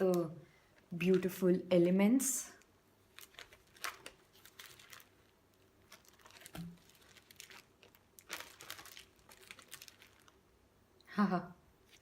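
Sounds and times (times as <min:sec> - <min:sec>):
paper rustling and crinkling: 0:03.1 - 0:10.4.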